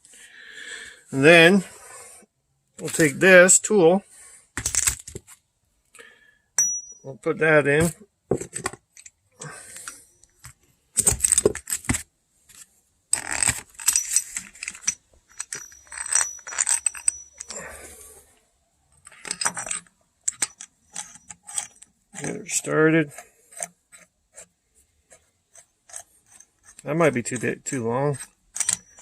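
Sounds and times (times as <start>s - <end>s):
metal tool parts clinking: 12.5s - 18.2s, 19.0s - 22.8s, 25.9s - 29.0s.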